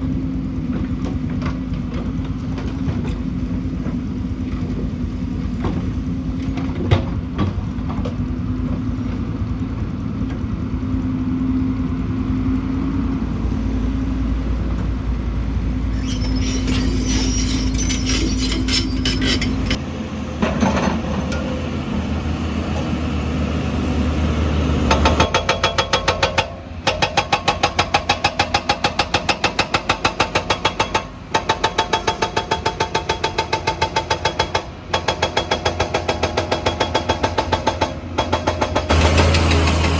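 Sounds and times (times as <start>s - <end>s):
excavator engine running: 36.0s - 39.9s.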